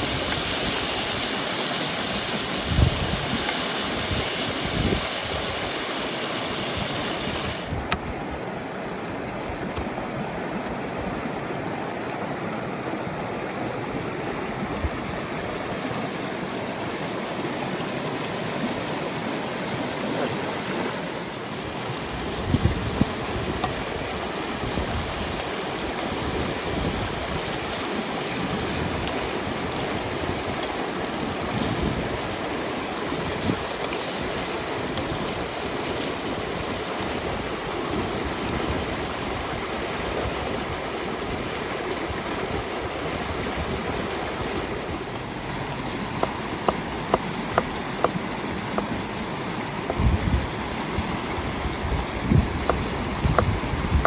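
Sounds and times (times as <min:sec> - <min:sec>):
stream flowing: 0:00.0 - 0:54.0.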